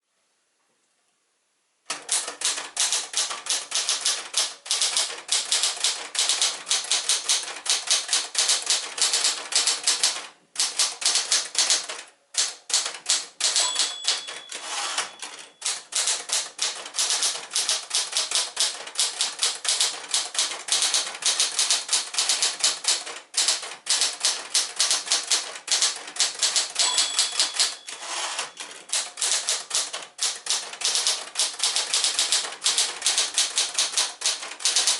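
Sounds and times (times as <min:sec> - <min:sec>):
typewriter key strikes: 0:01.9 - 0:34.9
typewriter bell ringing: 0:13.4 - 0:16.2, 0:26.4 - 0:29.0.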